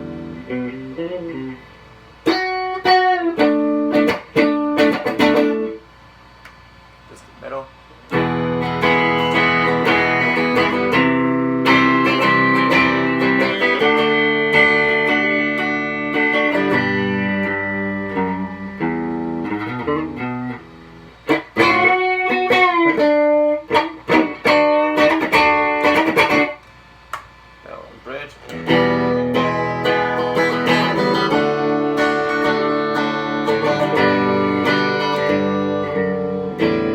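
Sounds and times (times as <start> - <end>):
electric guitar chords and notes: 0.0 - 5.9, 8.0 - 27.4, 28.5 - 36.9.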